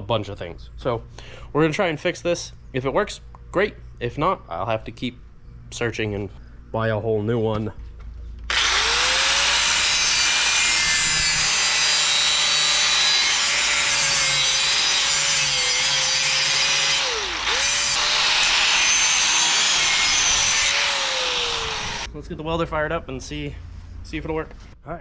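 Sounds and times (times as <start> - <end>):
electric grinder grinding metal: 8.5 - 22.1.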